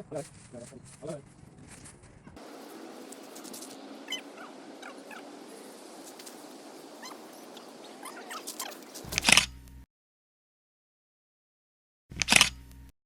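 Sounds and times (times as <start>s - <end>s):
steady background hiss: 2.4s - 9.1s
short falling bird chirps: 3.0s - 9.1s.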